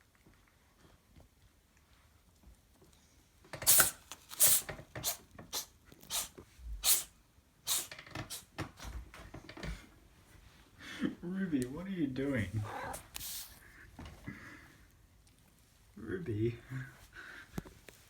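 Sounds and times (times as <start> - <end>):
dog sneezing: 3.6 - 8.5.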